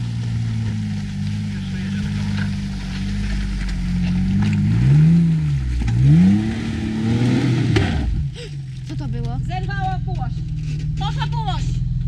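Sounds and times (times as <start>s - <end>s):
engine revving hard: 3.9s - 8.3s.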